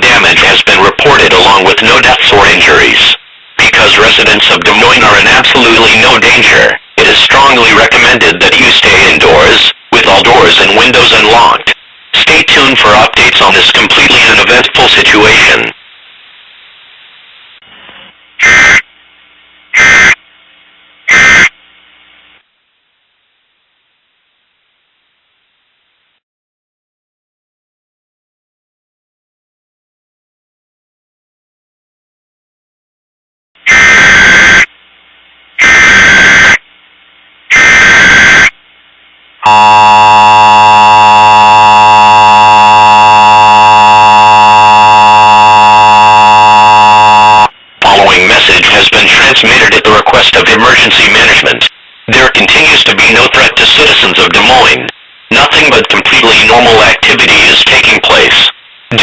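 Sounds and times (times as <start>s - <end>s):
two-tone digital data bursts: 39.5s - 47.5s.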